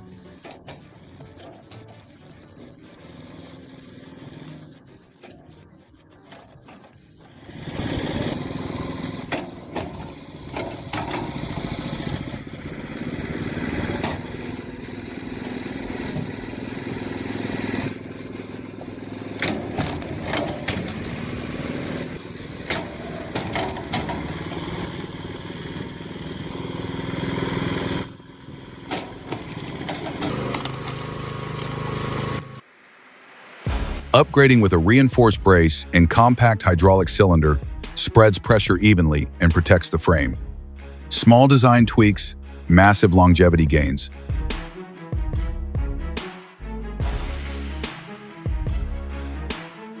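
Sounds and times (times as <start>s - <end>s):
log splitter engine running: 0.0s - 32.6s, 34.0s - 49.7s.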